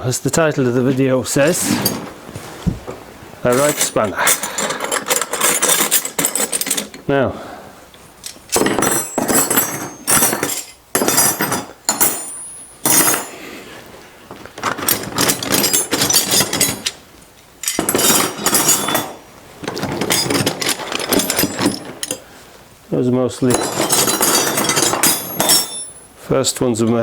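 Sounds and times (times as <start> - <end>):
metal spanners clinking: 1.5 - 2.1, 3.4 - 7.1, 8.0 - 13.4, 14.6 - 22.3, 23.4 - 27.0.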